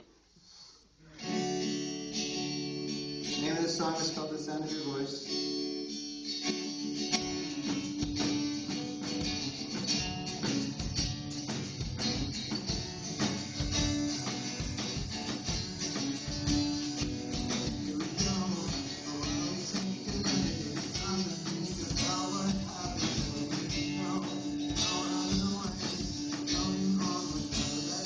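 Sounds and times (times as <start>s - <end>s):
strummed guitar: 1.1s - 28.0s
tambourine beat: 7.7s - 28.0s.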